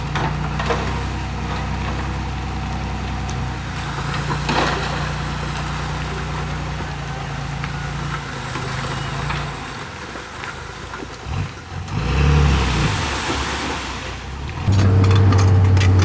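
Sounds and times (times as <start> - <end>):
heavy diesel engine revving: 0.0 - 16.0.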